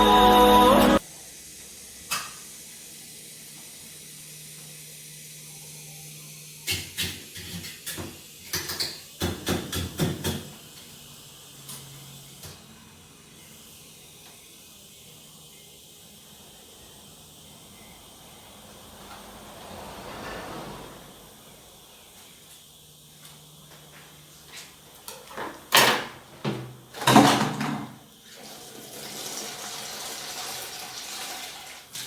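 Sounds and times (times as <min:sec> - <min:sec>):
gas hissing from a pipe: 0:00.0 - 0:32.0.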